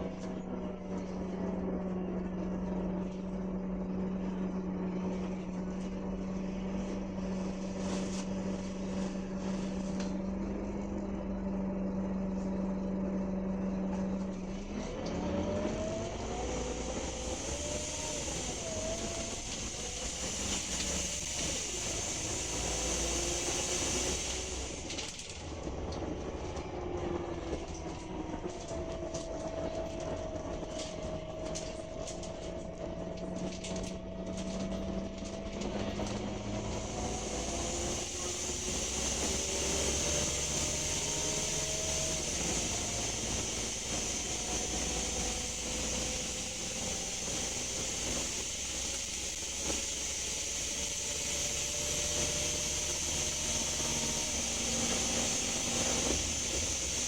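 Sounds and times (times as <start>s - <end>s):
bus engine accelerating: 0.0s - 57.0s
whooshing hiss: 16.6s - 25.4s, 35.9s - 57.0s.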